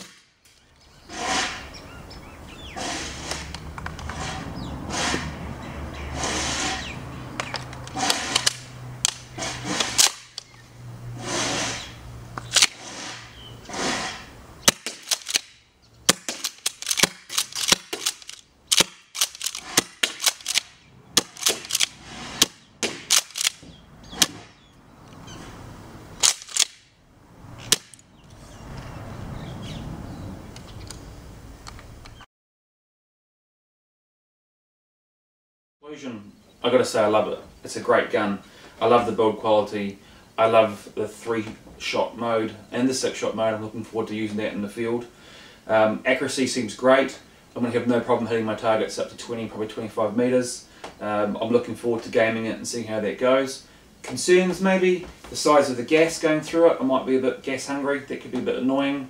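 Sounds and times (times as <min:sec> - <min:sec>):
airsoft shotgun shots: 0:00.0 - 0:00.3, 0:13.8 - 0:15.5, 0:16.1 - 0:23.6
rushing noise: 0:02.8 - 0:14.7.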